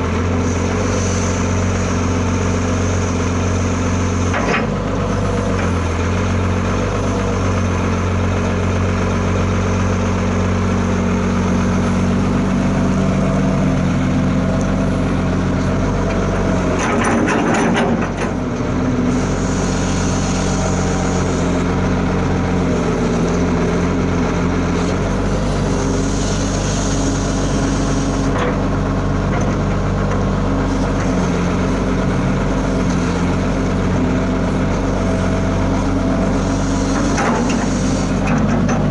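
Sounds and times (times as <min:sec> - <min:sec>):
excavator diesel engine running: 0:00.0 - 0:38.9
clatter of knocks: 0:16.8 - 0:18.4.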